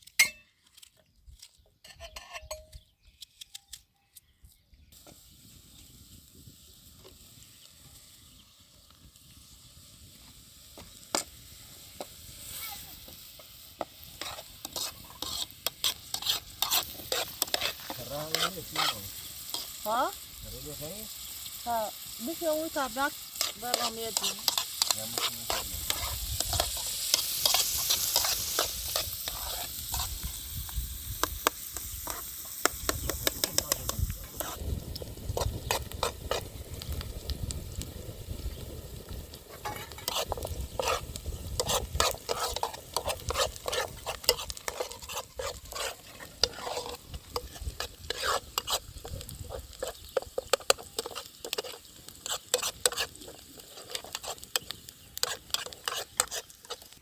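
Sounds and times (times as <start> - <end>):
high hissing sizzle: 4.9 - 57.0
rapid sharp clicks and scrapes: 14.1 - 19.8, 23.4 - 30.3, 39.1 - 57.0.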